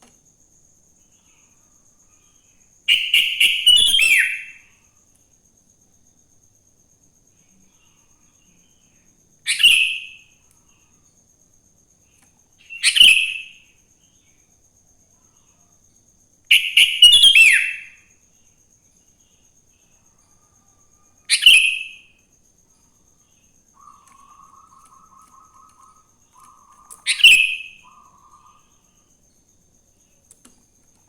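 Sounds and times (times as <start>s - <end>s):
bulbul calling: 16.5s - 18.0s, 23.8s - 28.8s.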